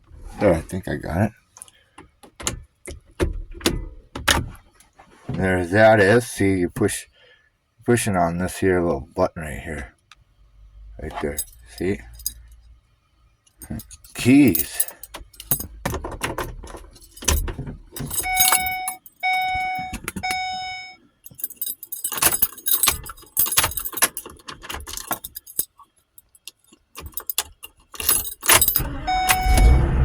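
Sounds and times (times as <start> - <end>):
keys jangling in ignition lock: 11.2 - 12.6, 13.5 - 29.7
vehicle warning chime: 18.0 - 21.1, 28.4 - 30.0
engine running rumble: 28.7 - 30.0.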